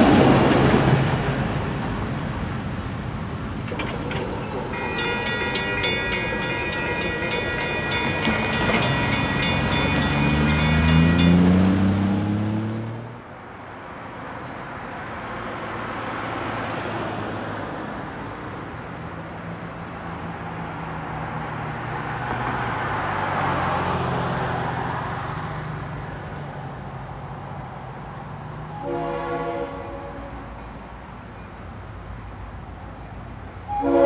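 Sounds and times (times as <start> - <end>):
diesel freight train engines: 0.0 - 34.0
wheels rushing on rail: 0.0 - 34.0
train horn blast: 28.8 - 30.5, 33.7 - 34.0.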